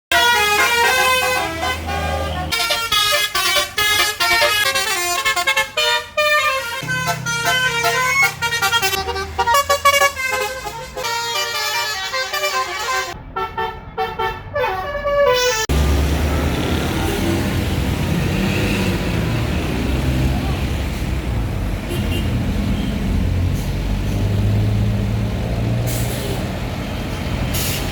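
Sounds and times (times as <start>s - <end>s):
multi-tone bus horn melody: 0.1s - 18.1s, 21.9s - 23.1s.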